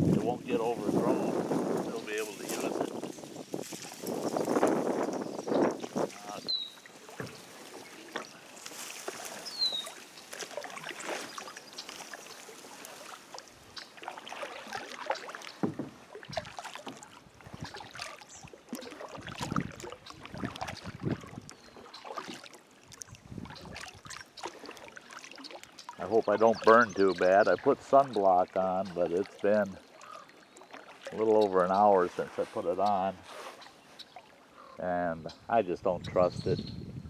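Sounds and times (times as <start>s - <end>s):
paddle splashing through water: 0.0s - 34.8s
light knocks on kayak hull: 15.6s - 16.0s.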